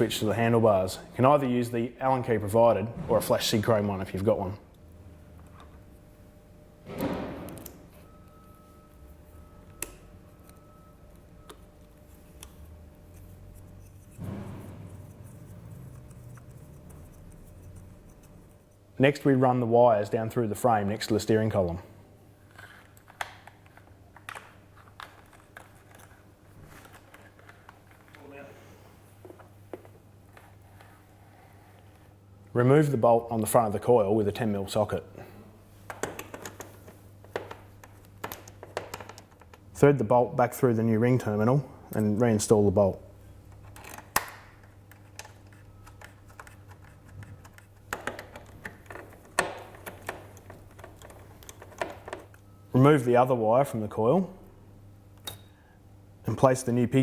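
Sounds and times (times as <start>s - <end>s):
wiring clicks and taps: 43.5s - 52.4s.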